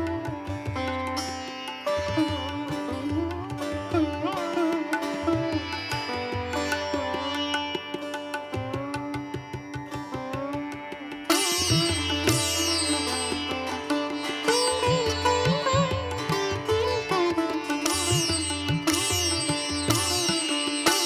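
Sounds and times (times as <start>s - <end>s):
sitar melody: 0.0s - 21.0s
tabla beat: 0.0s - 21.0s.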